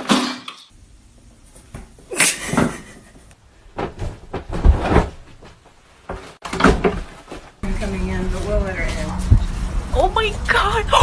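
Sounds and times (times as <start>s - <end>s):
dull thumps on door: 3.4s - 7.6s.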